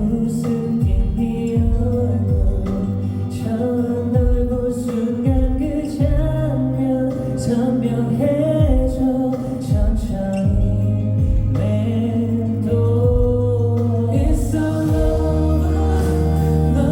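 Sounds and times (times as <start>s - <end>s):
electronic bass-drum hits: 0.0s - 3.1s, 4.2s - 6.5s, 9.7s - 11.8s, 13.0s - 16.9s
group singing pop song: 0.0s - 16.9s.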